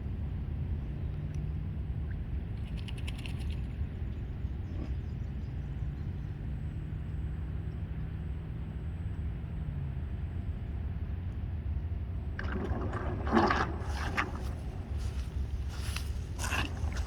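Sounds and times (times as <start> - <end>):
water splashing and gurgling: 12.2 - 17.0.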